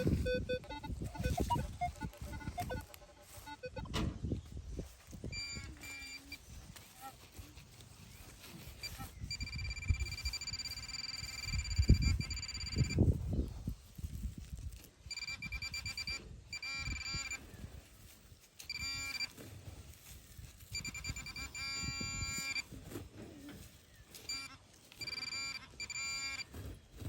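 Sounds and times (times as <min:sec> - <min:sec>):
metal detector buzzing tone: 0:00.0 - 0:04.0, 0:05.2 - 0:07.3, 0:08.5 - 0:13.2, 0:15.1 - 0:17.6, 0:18.6 - 0:19.4, 0:20.7 - 0:22.7, 0:24.1 - 0:26.5
digging in soil: 0:00.0 - 0:27.0.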